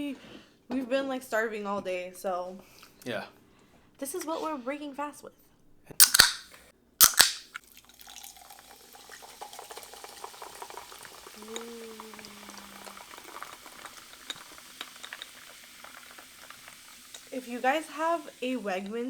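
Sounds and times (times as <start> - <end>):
fizzing hiss of carbonation: 6.0 - 6.4, 7.0 - 19.0
can cracked open: 6.0 - 7.7.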